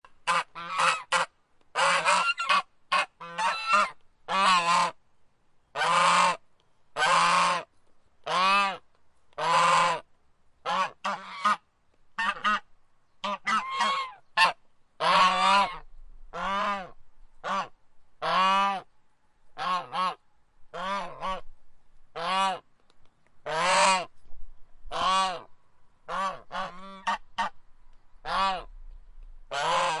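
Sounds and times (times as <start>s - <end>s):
goose honking: 0.2s - 5.0s, 5.8s - 6.4s, 7.0s - 7.7s, 8.3s - 8.8s, 9.4s - 10.0s, 10.6s - 11.6s, 12.2s - 18.8s, 19.6s - 21.4s, 22.2s - 22.6s, 23.4s - 24.1s, 24.9s - 25.5s, 26.1s - 27.6s, 28.2s - 28.7s, 29.5s - 30.0s.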